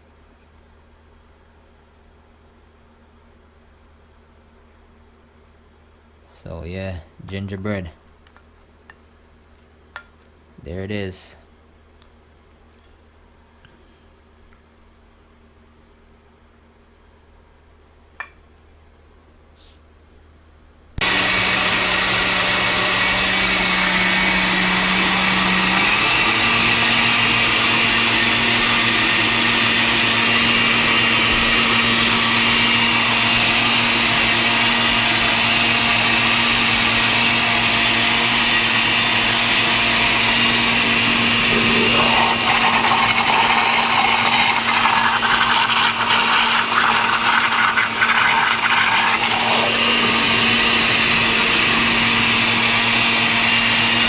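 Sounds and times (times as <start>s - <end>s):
electric blender running: 21.0s - 54.0s.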